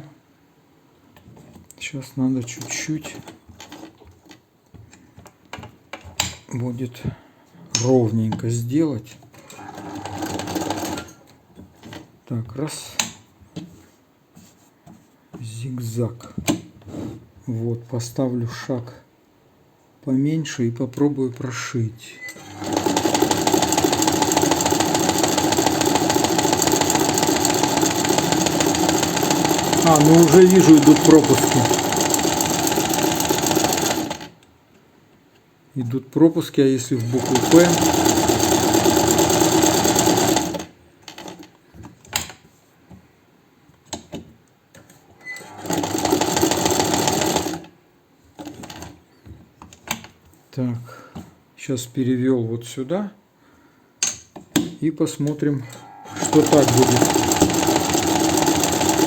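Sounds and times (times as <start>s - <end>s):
sewing machine clattering: 2.4s - 4.4s, 9.4s - 11.2s, 22.3s - 34.4s, 37.0s - 41.5s, 45.4s - 47.7s, 48.4s - 49.0s, 56.0s - 59.0s.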